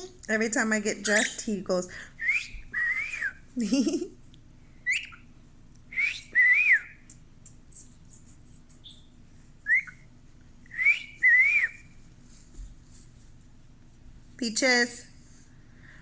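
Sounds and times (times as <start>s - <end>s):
soft bird chirps: 1.0s - 1.5s, 4.8s - 10.1s
cockatiel wolf whistle: 2.2s - 3.4s, 4.8s - 5.3s, 5.9s - 7.1s, 8.8s - 10.0s, 10.7s - 11.9s.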